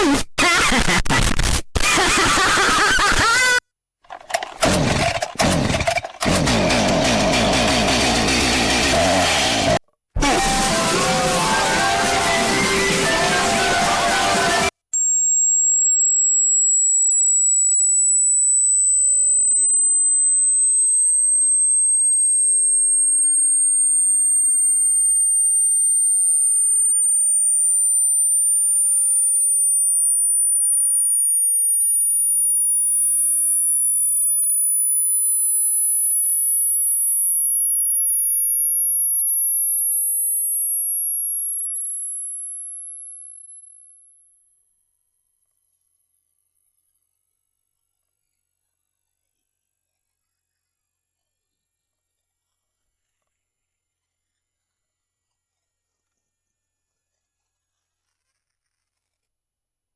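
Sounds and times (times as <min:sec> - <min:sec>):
high-pitched electronic tone: 0:09.0 - 0:17.0
music: 0:10.2 - 0:14.7.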